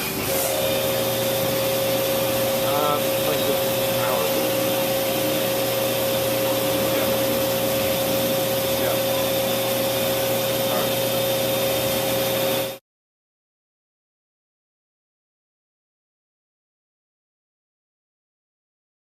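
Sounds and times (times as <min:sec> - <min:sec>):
machinery hum and whine: 0:00.0 - 0:12.8.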